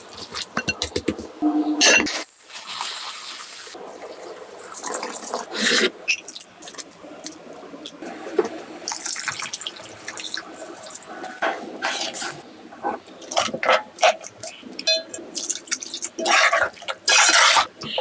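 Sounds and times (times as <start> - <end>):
wet splashes and squelches: 13.2 - 17.7.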